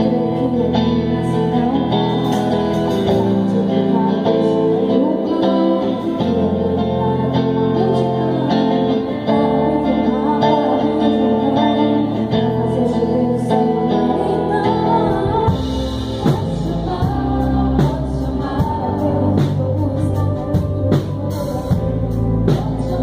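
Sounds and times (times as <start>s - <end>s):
guitar and bass: 0.0s - 23.0s
person singing: 0.0s - 23.0s
drum kit and cymbals: 15.1s - 23.0s.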